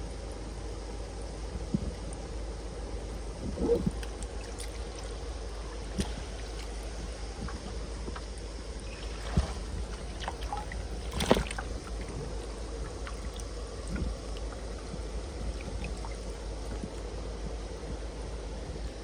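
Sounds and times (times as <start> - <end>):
water trickling and sloshing: 3.1 - 19.0
water splashes: 3.4 - 17.4.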